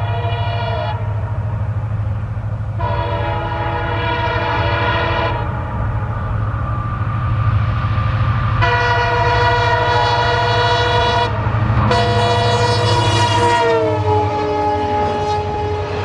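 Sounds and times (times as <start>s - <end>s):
locomotive horn blasts: 0.0s - 1.2s, 2.8s - 5.5s, 8.6s - 16.0s
low engine rumble: 0.0s - 16.0s.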